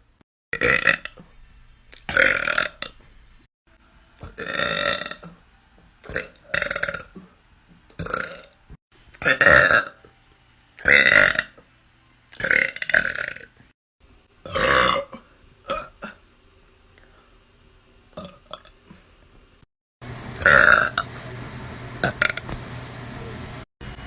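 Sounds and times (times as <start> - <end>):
person burping: 0.6 - 1.2, 2.1 - 3.0, 4.2 - 5.4, 6.0 - 7.3, 8.0 - 8.6, 9.2 - 10.0, 10.8 - 11.6, 12.4 - 13.5, 14.4 - 16.2, 18.2 - 19.0, 20.4 - 21.0, 22.0 - 22.4.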